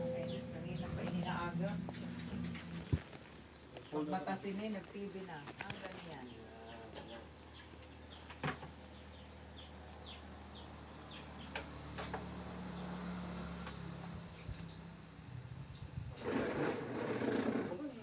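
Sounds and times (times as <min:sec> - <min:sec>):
high-pitched insect drone: 0:00.0 - 0:04.6.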